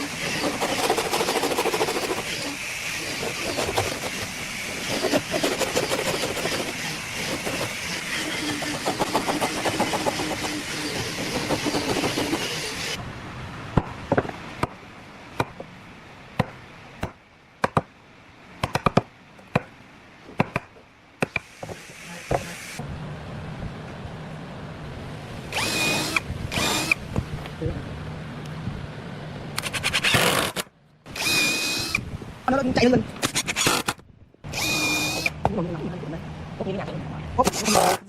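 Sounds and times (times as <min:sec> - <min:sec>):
loud steady hiss: 0:00.0 - 0:13.7, 0:21.0 - 0:23.6.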